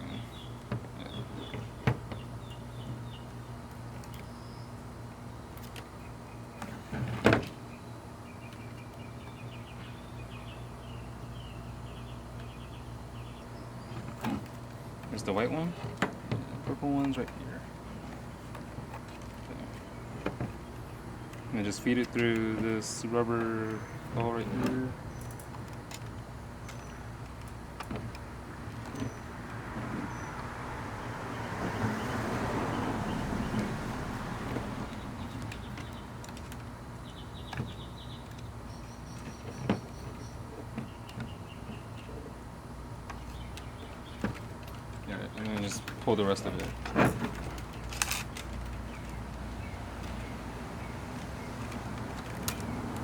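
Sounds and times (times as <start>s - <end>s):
steady low hum: 0.0s - 53.0s
wiring and plastic parts handled: 13.8s - 30.1s, 34.5s - 36.8s, 43.0s - 53.0s.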